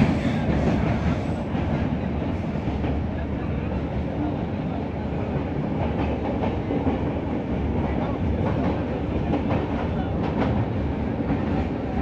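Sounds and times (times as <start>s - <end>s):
train wheels clacking over joints: 0.0s - 3.0s
train rumbling: 0.0s - 12.0s.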